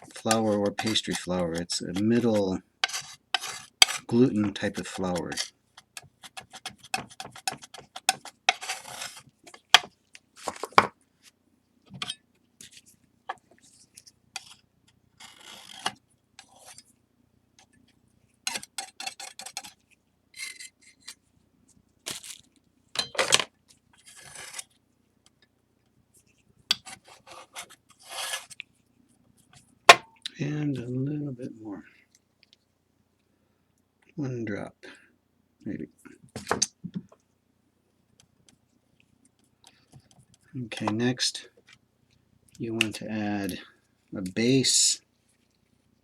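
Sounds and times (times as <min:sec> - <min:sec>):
palette knife scraping a tray: 0:00.0 - 0:05.5, 0:06.2 - 0:09.2, 0:24.0 - 0:24.7, 0:26.7 - 0:28.6.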